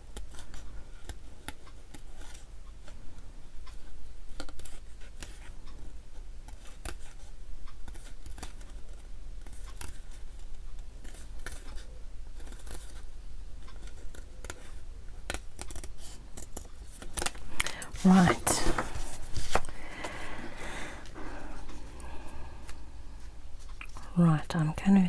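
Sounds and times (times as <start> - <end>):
scissors snipping paper: 11.0 - 13.1, 13.7 - 20.1.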